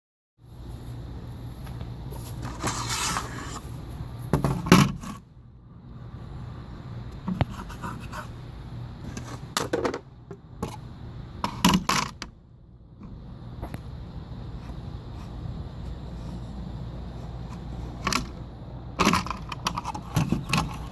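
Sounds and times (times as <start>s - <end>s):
steady low hum: 0.4s - 20.9s
objects scraping and knocking: 2.1s - 5.2s, 9.0s - 10.0s, 19.0s - 20.9s.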